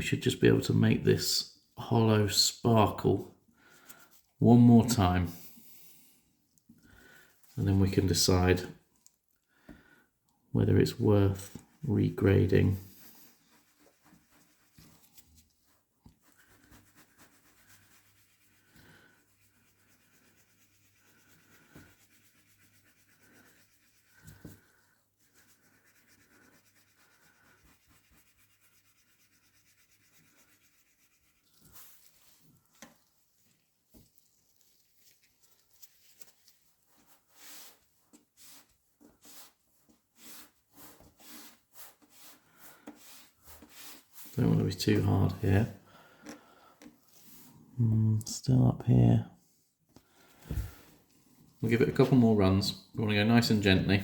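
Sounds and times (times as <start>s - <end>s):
rubbing polishing strokes on card: 11.4s - 45.2s.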